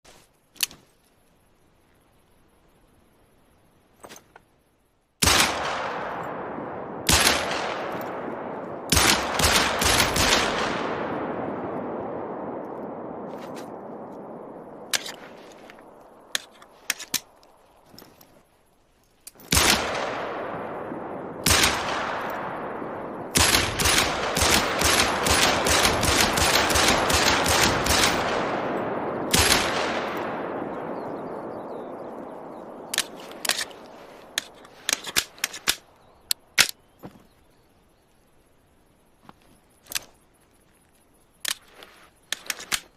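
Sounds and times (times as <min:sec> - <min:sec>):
pistol gunshots echoing: 0:05.2 - 0:12.4, 0:19.5 - 0:31.4
small sharp clicks: 0:32.9 - 0:36.8, 0:39.8 - 0:42.9.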